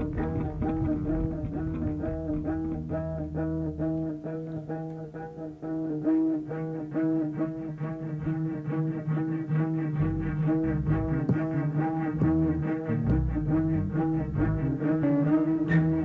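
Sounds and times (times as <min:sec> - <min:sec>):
deep bass line: 0:00.0 - 0:03.4, 0:10.0 - 0:14.8.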